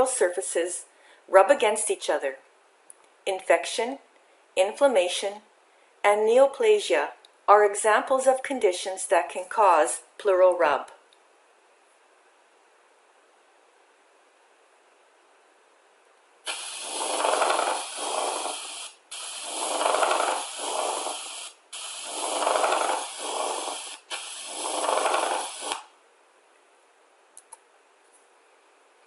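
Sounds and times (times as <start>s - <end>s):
breathing: 0.9s - 1.3s, 5.6s - 6.0s
grating pleural friction rub: 16.5s - 25.9s.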